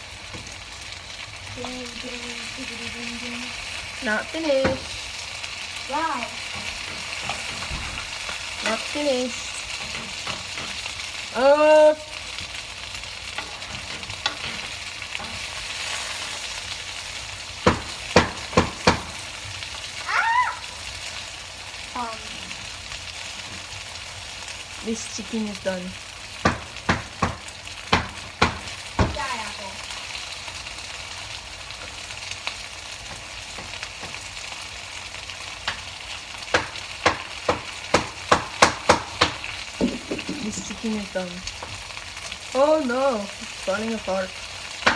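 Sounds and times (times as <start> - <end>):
chicken sizzling in a pan: 0.0 - 44.9
sharp knocks: 17.6 - 19.2.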